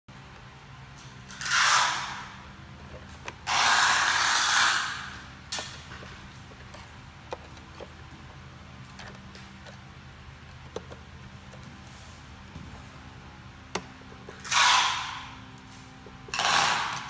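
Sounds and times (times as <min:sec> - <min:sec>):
tool scraping plastic casing: 0:16.3 - 0:17.0.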